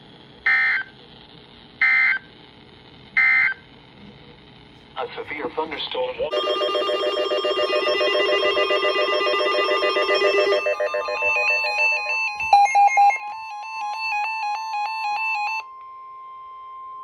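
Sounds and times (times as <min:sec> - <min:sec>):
steady high tone: 0:06.0 - 0:15.7
beeps alternating low and high: 0:06.3 - 0:15.4
ringing electronic warble: 0:06.3 - 0:15.6.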